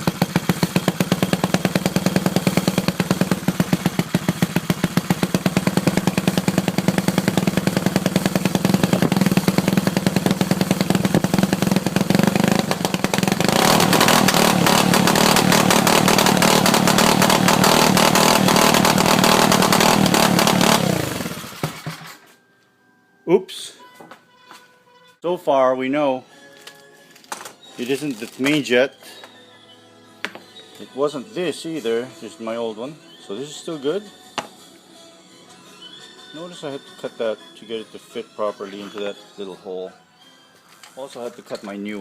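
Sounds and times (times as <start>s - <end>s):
bicycle motor running and sputtering: 0.0s - 21.5s.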